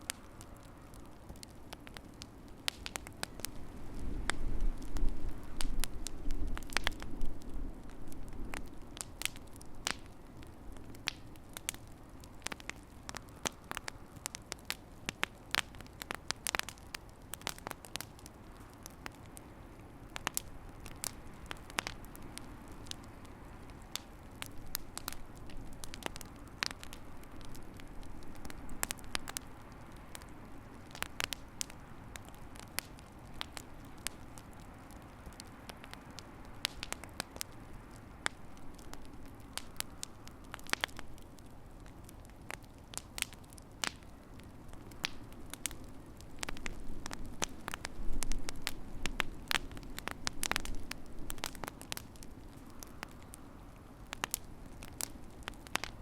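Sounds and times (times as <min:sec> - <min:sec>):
low rumble of burning: 0:00.0 - 0:56.0
wood fire crackling: 0:00.0 - 0:56.0
sharp pops and snaps: 0:20.1 - 0:56.0.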